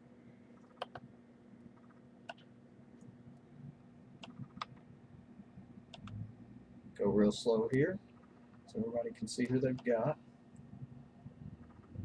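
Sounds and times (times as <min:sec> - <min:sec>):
low steady hum: 0:00.0 - 0:12.0
computer mouse and keyboard clicks: 0:00.6 - 0:01.0, 0:01.8 - 0:02.5, 0:04.2 - 0:04.8, 0:05.9 - 0:06.2.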